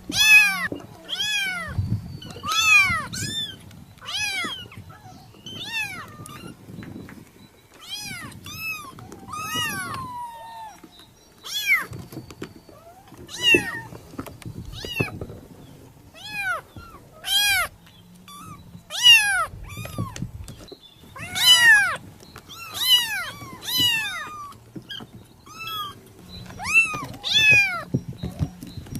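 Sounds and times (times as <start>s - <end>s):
kitten meowing: 0.1s - 6.6s, 7.8s - 10.8s, 12.9s - 13.9s, 16.2s - 17.7s, 18.3s - 20.3s, 21.2s - 26.0s, 26.6s - 27.9s.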